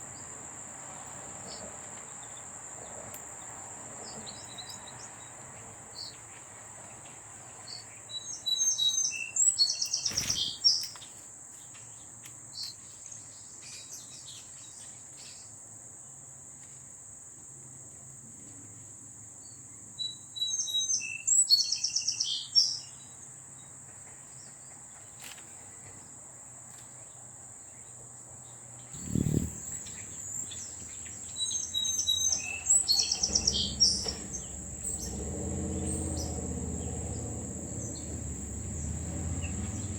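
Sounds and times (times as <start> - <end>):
songbird singing with trill: 7.7 - 11.0, 20.0 - 23.2, 29.0 - 39.9
high insect drone: 29.0 - 39.9.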